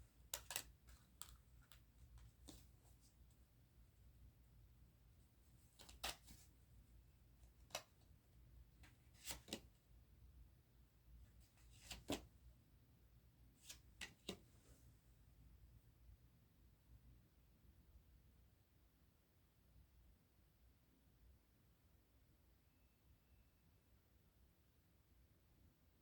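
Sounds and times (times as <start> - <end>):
cards snapping and clicking: 0.3 - 1.8, 5.8 - 6.4.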